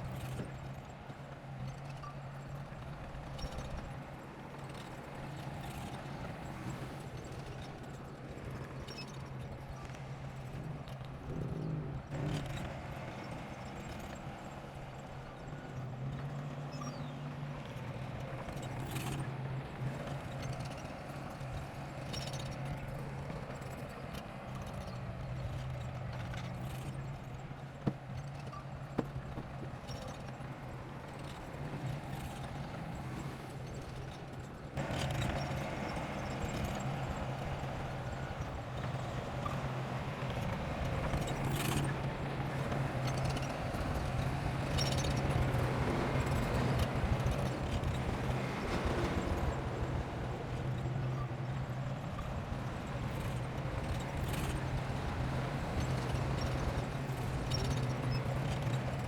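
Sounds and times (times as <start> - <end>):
bulldozer engine running: 34.7 - 59.0.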